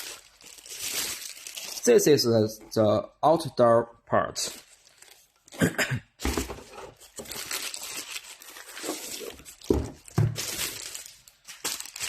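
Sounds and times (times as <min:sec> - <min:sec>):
packaging crinkling and rustling: 0:00.0 - 0:02.1, 0:04.5 - 0:05.6, 0:06.3 - 0:12.0.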